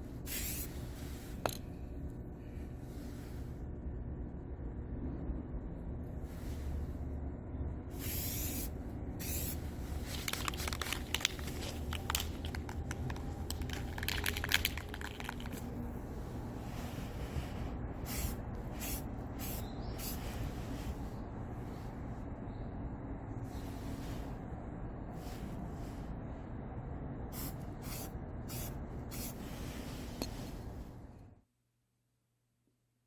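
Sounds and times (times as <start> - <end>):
steady low hum: 0.0 - 32.9
spray paint can hissing: 0.3 - 0.7, 8.0 - 15.7, 27.4 - 29.4.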